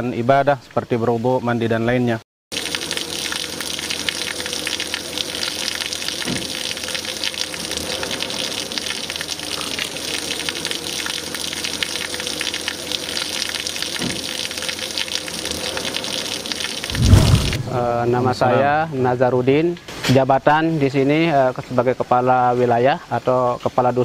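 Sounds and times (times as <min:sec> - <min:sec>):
water gushing from pipe: 0:02.5 - 0:17.9.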